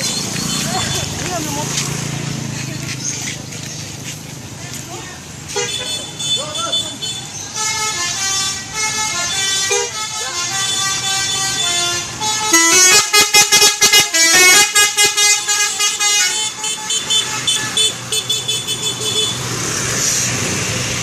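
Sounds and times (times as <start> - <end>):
musical air horn melody: 7.6 - 19.4.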